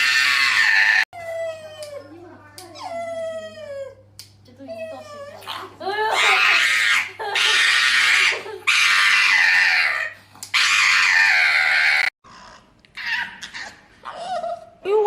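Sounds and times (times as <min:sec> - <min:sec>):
animal screaming: 0:00.0 - 0:01.1, 0:05.4 - 0:14.3.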